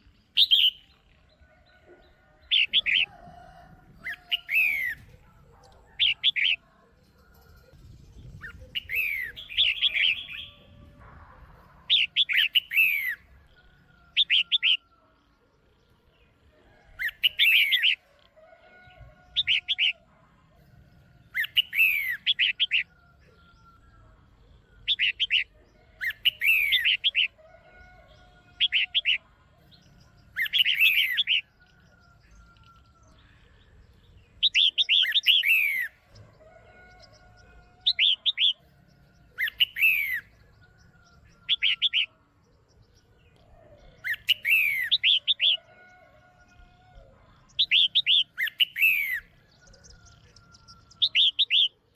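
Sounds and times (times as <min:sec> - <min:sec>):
bird chirping and whistling: 0:00.4 - 0:00.8, 0:04.2 - 0:05.1, 0:08.4 - 0:10.7, 0:21.4 - 0:22.8, 0:26.1 - 0:27.1, 0:34.5 - 0:35.9, 0:39.4 - 0:40.3, 0:44.0 - 0:45.5, 0:47.6 - 0:49.3.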